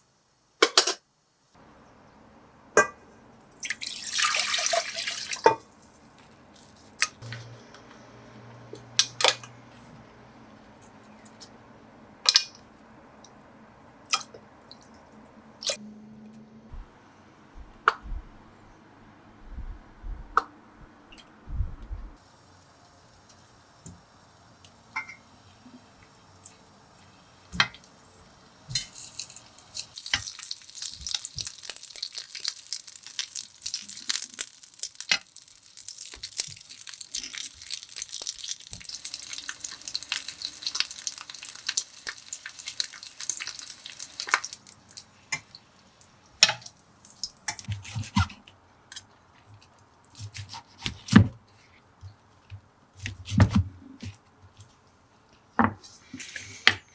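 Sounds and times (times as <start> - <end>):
food sizzling in a hot pan: 22.2 - 47.6.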